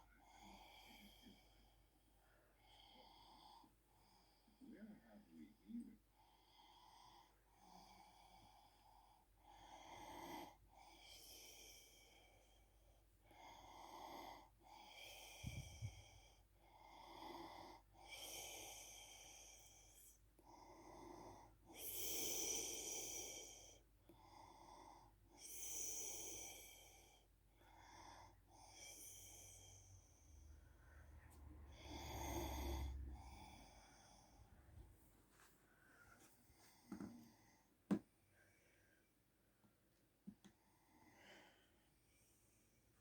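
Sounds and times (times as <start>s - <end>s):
high hissing breath: 28.2s - 34.6s
woman snoring faintly: 31.8s - 33.7s.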